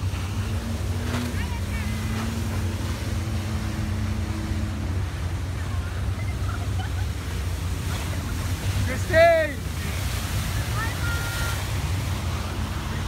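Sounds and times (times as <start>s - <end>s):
motorboat engine running: 0.0s - 13.0s.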